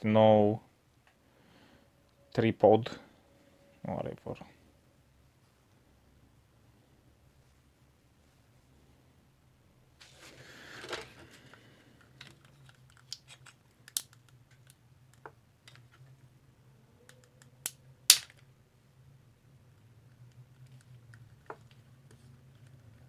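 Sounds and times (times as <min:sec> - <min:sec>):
plastic clicks and snaps: 0:12.2 - 0:16.0, 0:17.1 - 0:18.5.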